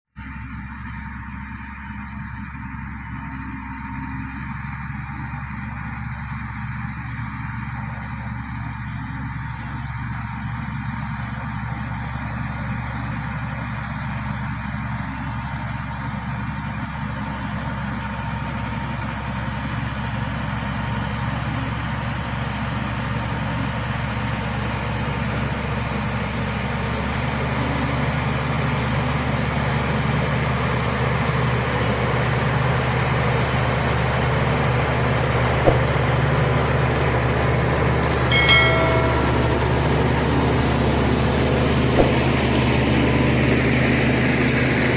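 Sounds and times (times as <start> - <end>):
bulldozer diesel engine running: 0.2 - 44.9
sharp knock: 35.7 - 36.1, 38.0 - 40.0, 42.0 - 42.4.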